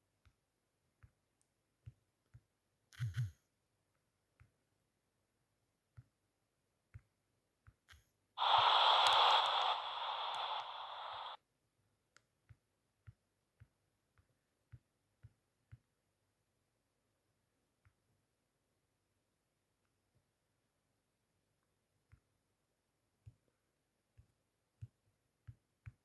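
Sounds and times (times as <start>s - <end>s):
hissing noise burst: 8.4s - 11.4s.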